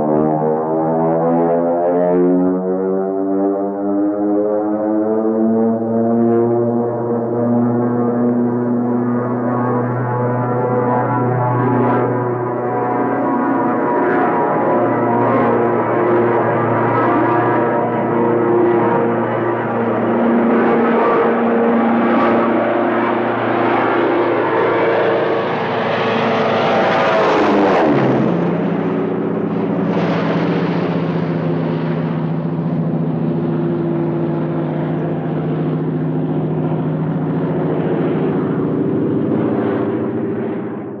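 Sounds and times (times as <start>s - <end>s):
propeller airplane engine droning: 0.0s - 41.0s.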